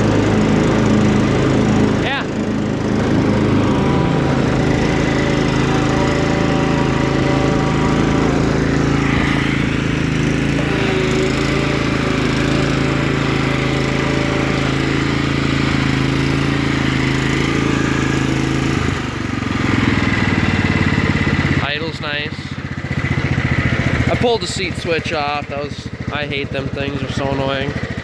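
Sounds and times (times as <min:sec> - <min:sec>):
riding lawn mower engine running: 0:00.0 - 0:28.0.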